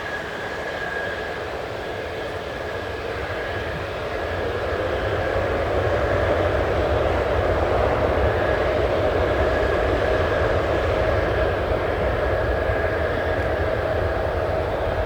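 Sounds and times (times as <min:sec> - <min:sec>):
jet engines whining: 0:00.0 - 0:15.0.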